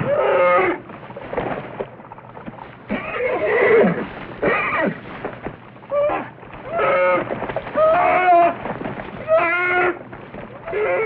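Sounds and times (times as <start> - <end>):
horse whinnying: 0.0 - 0.9, 2.9 - 5.0, 5.9 - 8.6, 9.2 - 11.0.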